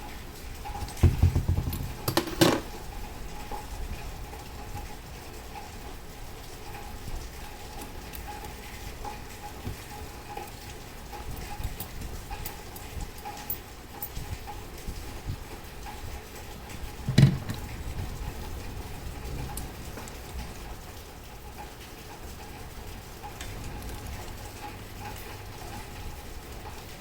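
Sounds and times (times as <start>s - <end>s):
dull handling thumps: 0.8s - 2.7s, 17.1s - 17.6s.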